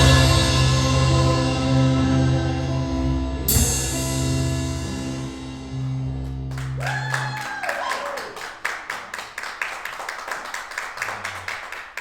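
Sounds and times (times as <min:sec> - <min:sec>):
band holding a chord: 0:00.0 - 0:06.8
congregation clapping: 0:06.2 - 0:12.0.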